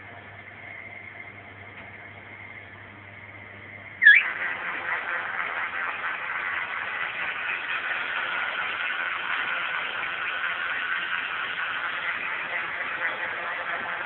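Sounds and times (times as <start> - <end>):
metal lathe running: 4.2 - 14.0.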